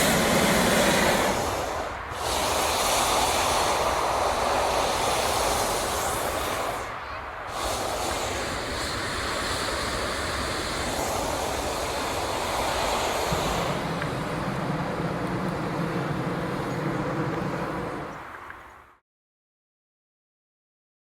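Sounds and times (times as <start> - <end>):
propane burner hissing: 0.0 - 18.3
low steady hum: 11.8 - 18.3.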